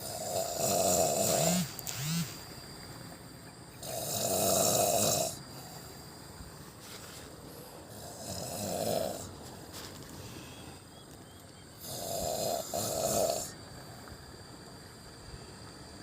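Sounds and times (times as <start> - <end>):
person snoring: 0.0 - 2.2, 3.8 - 5.4, 7.9 - 9.3, 11.8 - 13.6.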